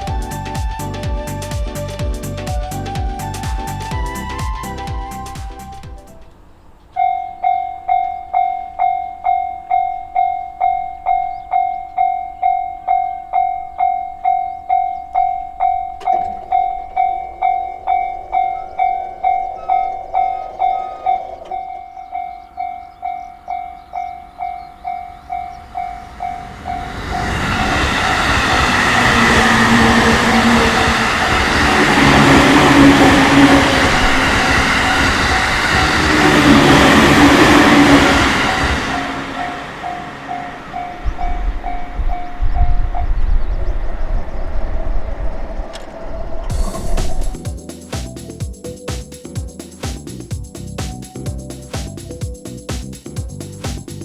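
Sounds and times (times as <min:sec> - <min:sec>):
level crossing warning bell: 0:07.0 - 0:42.4
train wheels rushing on rail: 0:24.8 - 0:43.0, 0:43.6 - 0:48.4.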